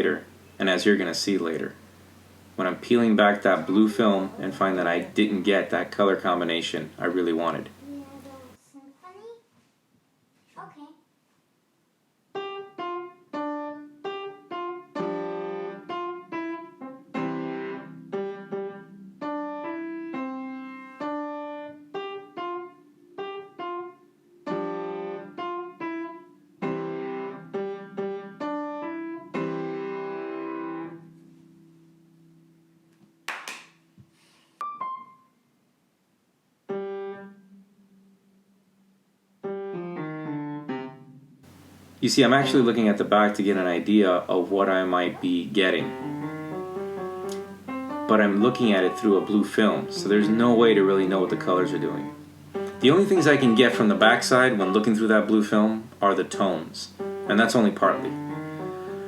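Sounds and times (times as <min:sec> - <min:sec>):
piano playing simple tune: 0:12.3 - 0:33.2, 0:34.6 - 0:35.6, 0:36.6 - 0:59.0.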